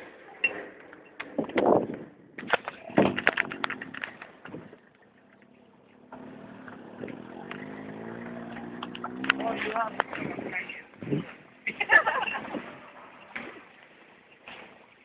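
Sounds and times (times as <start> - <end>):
vehicle knocks and rattles: 1.3 - 10.4
vehicle engine running: 2.8 - 11.6.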